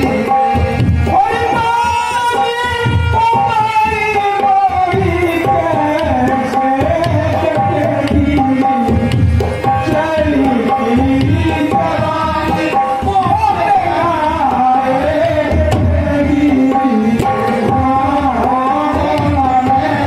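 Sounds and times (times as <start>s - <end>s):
hand drum rhythm: 0.0s - 20.0s
harmonium melody: 0.0s - 20.0s.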